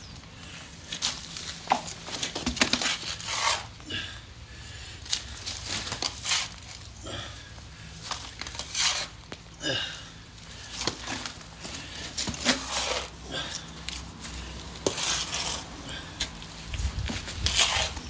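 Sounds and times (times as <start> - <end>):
trowel scraping mud and grit: 0.9 - 4.1, 5.1 - 6.9, 8.1 - 9.3, 10.8 - 18.0.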